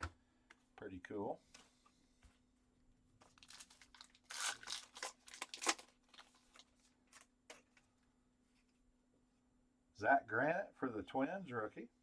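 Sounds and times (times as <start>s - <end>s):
wrapper tearing and crinkling: 3.3s - 7.3s.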